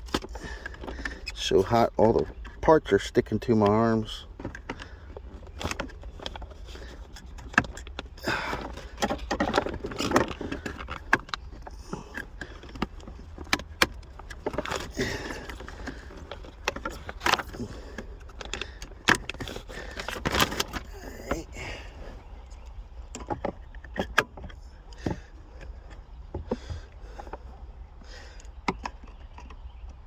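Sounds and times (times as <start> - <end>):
steady low hum: 0.0 - 29.8
plastic trim clicks and scrapes: 3.6 - 21.4.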